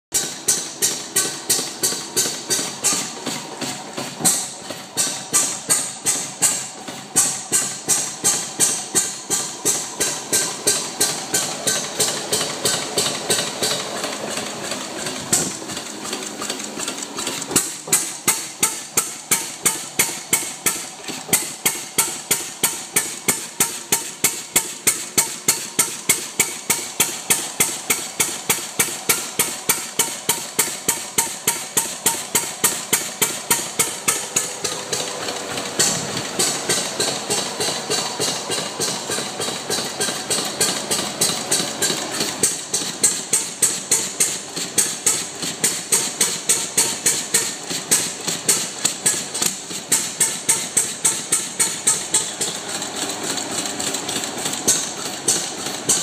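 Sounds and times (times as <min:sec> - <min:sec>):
stationary engine running: 0:00.2 - 0:56.0.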